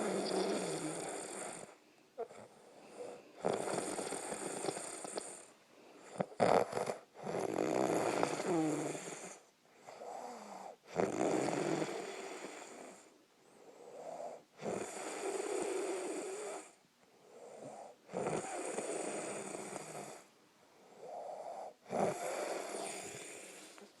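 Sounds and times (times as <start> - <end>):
man snoring loudly: 0.0 - 1.7, 3.4 - 5.4, 6.3 - 9.4, 10.2 - 13.0, 18.1 - 20.2, 21.2 - 23.7.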